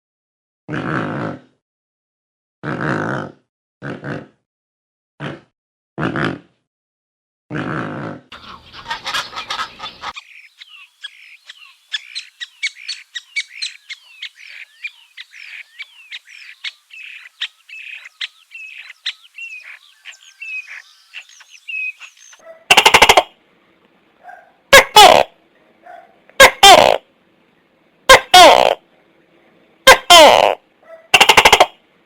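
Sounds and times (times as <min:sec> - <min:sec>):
bird chirping and whistling: 0:08.9 - 0:22.6.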